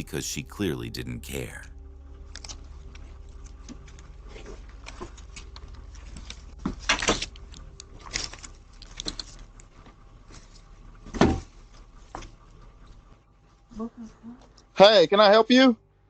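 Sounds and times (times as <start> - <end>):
steady low microphone hum: 0.0 - 8.8.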